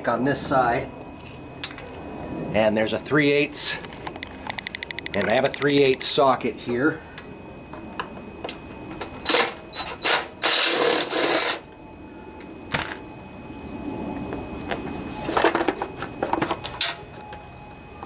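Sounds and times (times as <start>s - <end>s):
ratchet clicks: 4.2s - 6.1s.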